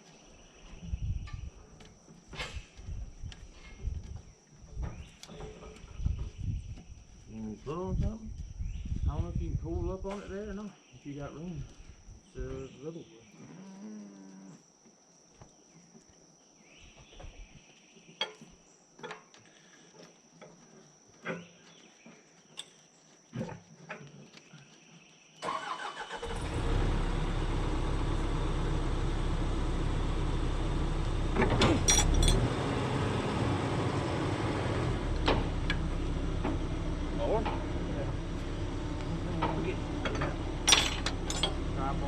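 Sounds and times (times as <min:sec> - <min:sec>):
diesel engine running: 0:25.4 - 0:42.0
metal clanks: 0:31.4 - 0:32.5, 0:39.3 - 0:41.8.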